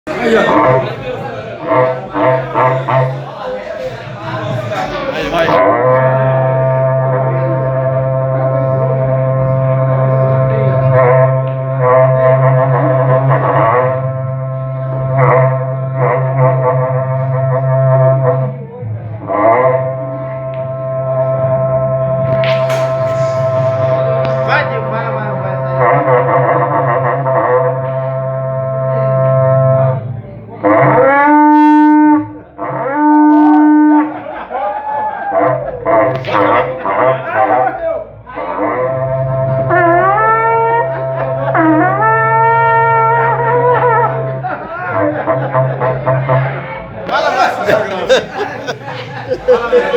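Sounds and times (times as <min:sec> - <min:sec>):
horn blown in a low drone: 0:05.6 - 0:18.6, 0:19.3 - 0:34.0, 0:38.4 - 0:44.5.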